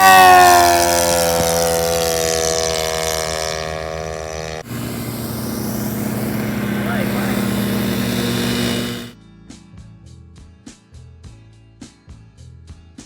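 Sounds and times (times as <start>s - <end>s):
model airplane motor whine: 0.0s - 9.1s.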